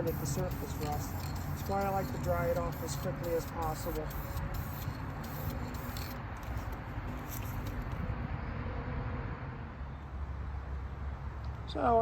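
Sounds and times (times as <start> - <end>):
aerosol can spraying: 0.0 - 7.8.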